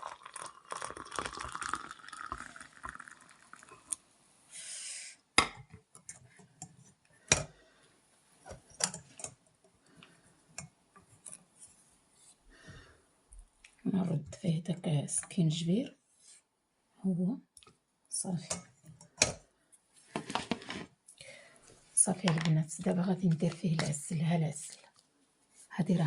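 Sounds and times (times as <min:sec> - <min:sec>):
liquid pouring into a cup: 0:00.0 - 0:04.0.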